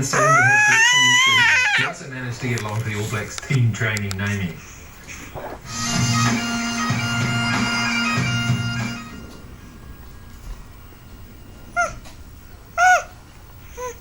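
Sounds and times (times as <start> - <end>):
bagpipe music with drone: 5.7 - 10.0.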